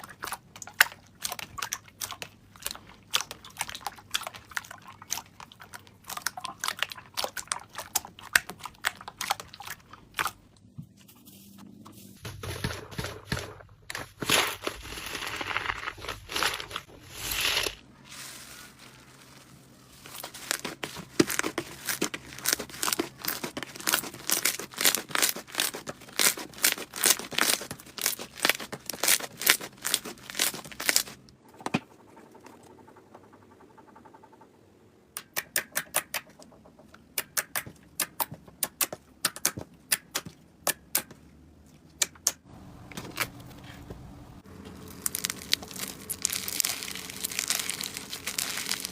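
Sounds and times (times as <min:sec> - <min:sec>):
slime crinkly rustle: 0:13.9 - 0:31.2, 0:44.7 - 0:48.9.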